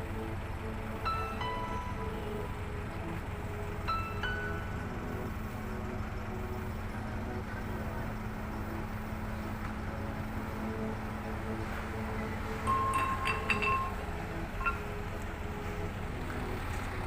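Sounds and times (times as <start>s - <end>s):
low engine rumble: 0.0s - 17.0s.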